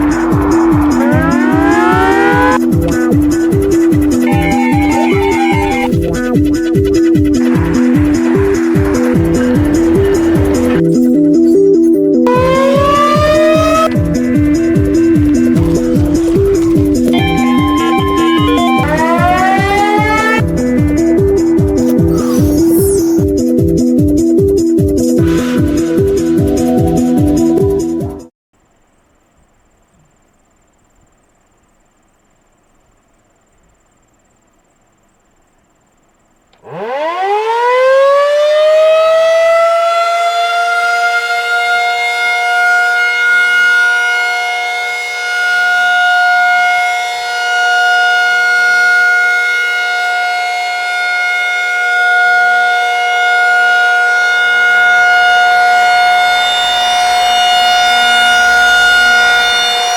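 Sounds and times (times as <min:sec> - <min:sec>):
warning siren rising to steady tone: 0:00.0 - 0:11.2, 0:12.2 - 0:20.6, 0:21.8 - 0:23.3, 0:36.6 - 0:59.9.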